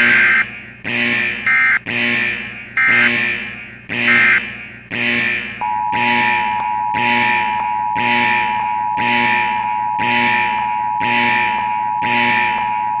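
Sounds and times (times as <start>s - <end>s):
blaring alarm pulse: 0.0s - 13.0s
steady high tone: 5.6s - 13.0s.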